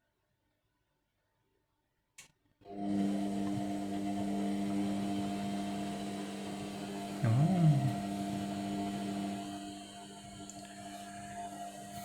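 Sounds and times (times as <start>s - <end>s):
washing machine motor hum: 2.7s - 12.0s.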